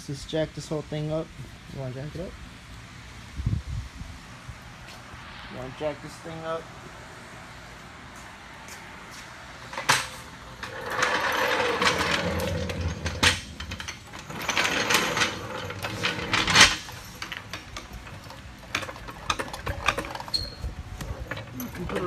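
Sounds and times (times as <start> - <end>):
floor jack rattling and clanking: 9.9 - 22.0.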